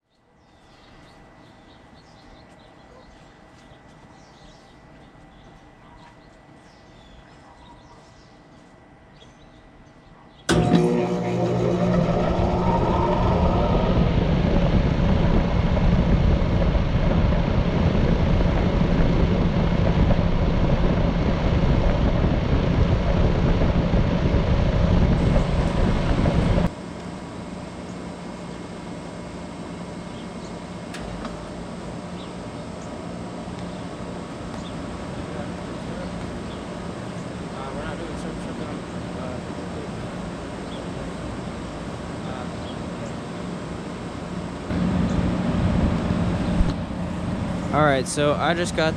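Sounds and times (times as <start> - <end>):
heat pump compressor and fan: 0.1 - 48.9
rising whine: 10.5 - 40.2, 44.6 - 48.9.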